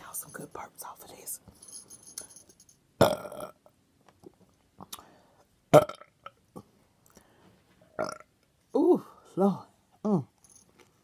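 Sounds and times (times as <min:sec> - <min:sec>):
person burping: 0:03.0 - 0:03.7, 0:05.7 - 0:06.4, 0:08.0 - 0:08.3.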